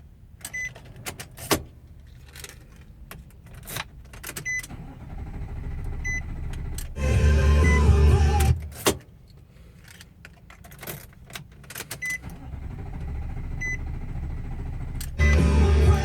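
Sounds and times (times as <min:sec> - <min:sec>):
starter cranking engine: 0:04.7 - 0:08.9
low hum: 0:04.9 - 0:08.8, 0:12.4 - 0:16.0.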